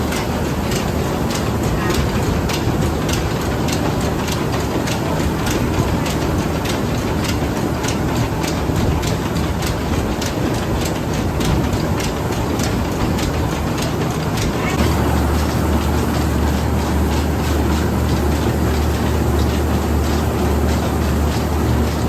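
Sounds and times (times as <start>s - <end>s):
mill machine clattering: 0.0s - 22.0s
low hum: 14.8s - 22.0s.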